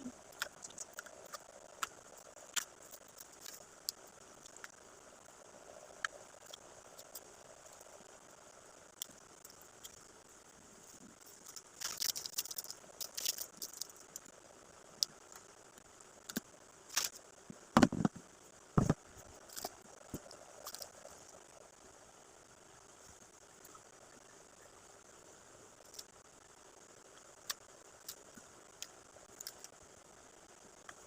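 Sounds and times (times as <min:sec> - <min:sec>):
packaging crackly rustling: 0:11.2 - 0:14.2.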